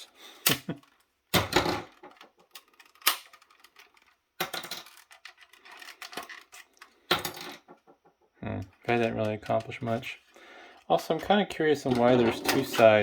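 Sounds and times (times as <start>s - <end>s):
plastic case cracking: 0.5s - 7.0s
small clicks and rattles: 0.8s - 10.0s.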